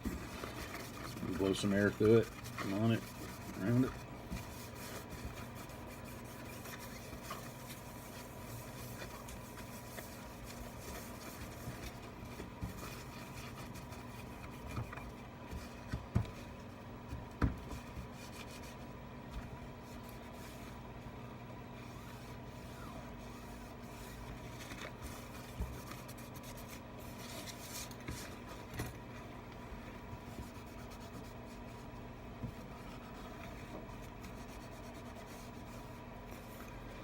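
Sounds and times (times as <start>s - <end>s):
cloth rubbing: 0.0s - 15.8s.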